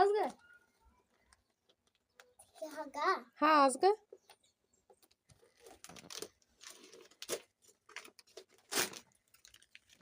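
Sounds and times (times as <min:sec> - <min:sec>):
wrapping paper tearing and crinkling: 0:05.6 - 0:10.0.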